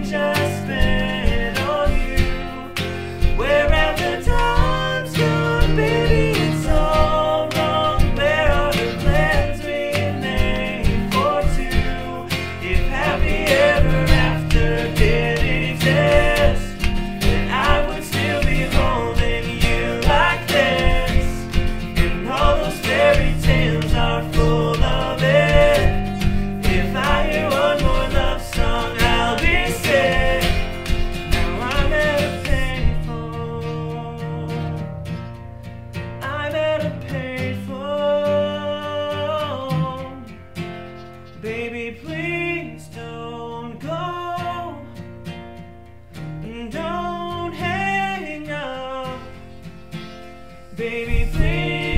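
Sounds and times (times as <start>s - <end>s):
acoustic guitar: 0.0s - 51.9s
beat tapped on plastic containers: 0.3s - 33.1s.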